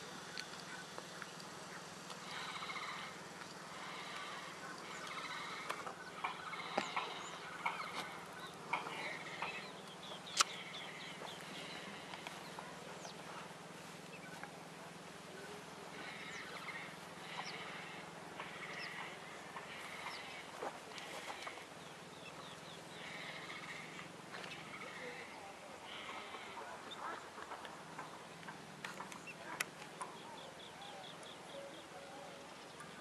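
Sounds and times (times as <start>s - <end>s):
sharp clicks: 8.7s - 10.7s
bird chick raspy panting: 15.9s - 25.3s.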